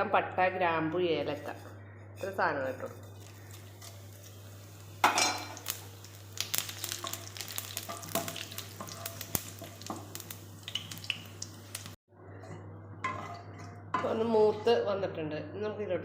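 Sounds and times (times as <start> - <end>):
spices sizzling in a pan: 2.3 - 12.0.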